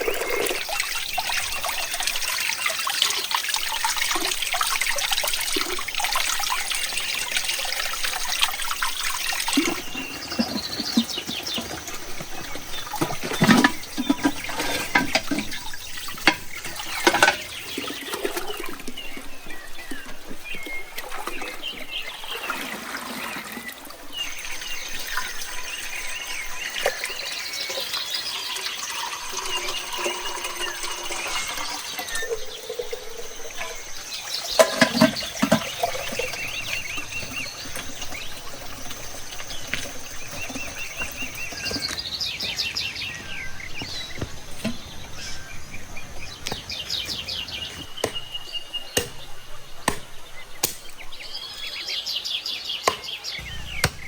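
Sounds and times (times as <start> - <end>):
small birds chirping: 0.0 - 54.0
louder bird call: 53.4 - 54.0.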